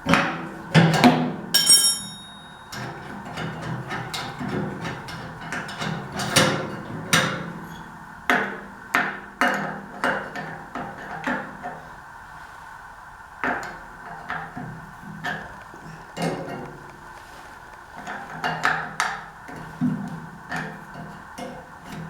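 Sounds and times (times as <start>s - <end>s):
tools clanking on metal: 0.8s - 7.5s.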